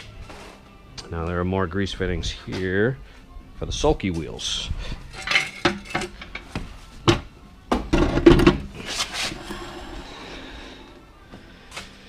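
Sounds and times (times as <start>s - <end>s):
metal tools knocking and clattering: 5.1s - 7.2s.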